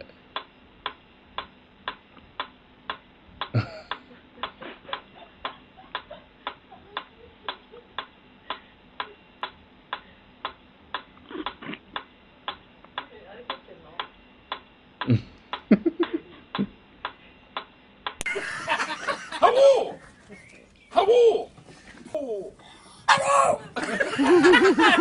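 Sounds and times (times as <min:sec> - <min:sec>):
regular ticking clicks: 0:00.0 - 0:18.3.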